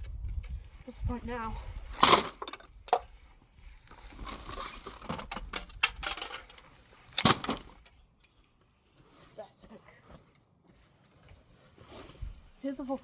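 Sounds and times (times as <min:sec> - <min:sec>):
hairdryer being smashed: 0:02.0 - 0:03.0.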